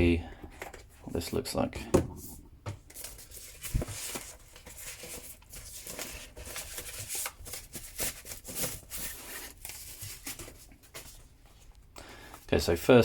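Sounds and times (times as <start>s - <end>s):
packaging rustling and scraping: 2.2s - 11.7s.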